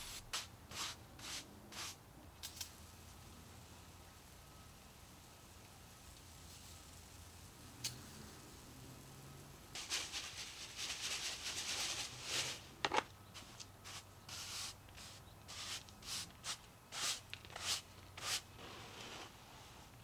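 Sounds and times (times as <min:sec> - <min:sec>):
rubbing and scraping handling noises: 0:00.0 - 0:02.0, 0:09.8 - 0:20.0.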